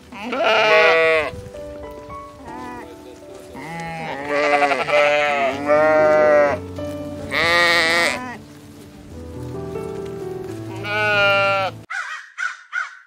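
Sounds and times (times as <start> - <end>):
sheep bleating: 0.0 - 1.4, 2.4 - 2.9, 3.5 - 6.6, 7.3 - 8.4, 10.7 - 11.9
background music: 0.0 - 11.9.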